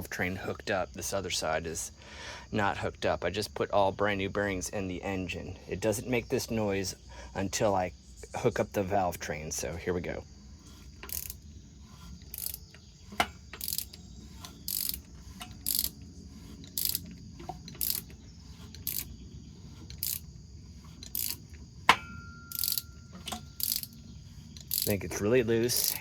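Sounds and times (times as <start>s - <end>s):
ratchet wrench clicking: 10.7s - 19.1s, 19.7s - 25.0s, 25.7s - 26.0s
metallic ring: 21.1s - 24.0s.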